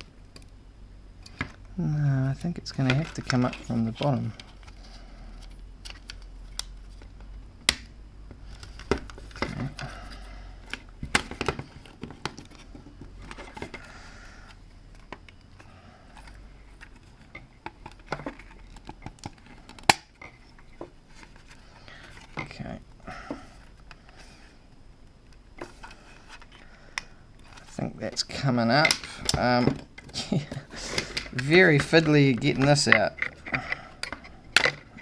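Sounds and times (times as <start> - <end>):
plastic clicks and scraping: 28.8 - 35.0.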